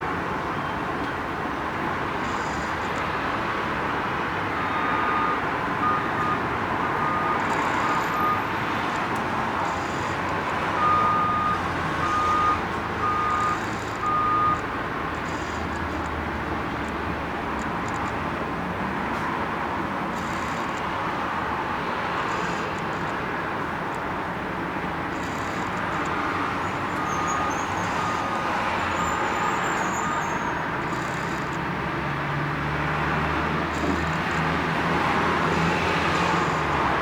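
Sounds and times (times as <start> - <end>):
autofocus motor whines: 4.5 - 16.2, 20.1 - 23.2, 25.1 - 31.8.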